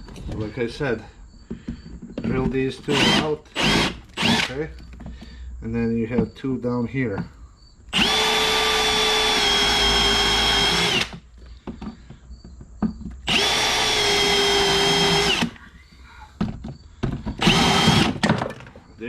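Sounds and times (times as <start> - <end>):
power drill running: 2.9 - 4.6, 7.9 - 11.2, 13.3 - 15.6, 17.4 - 18.2.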